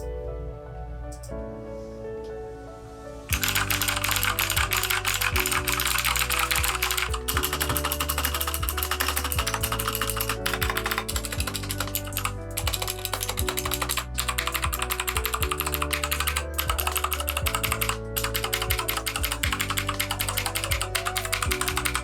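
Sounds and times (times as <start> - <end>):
background music with low notes: 0.0 - 22.0
mechanical keyboard typing: 3.3 - 22.0.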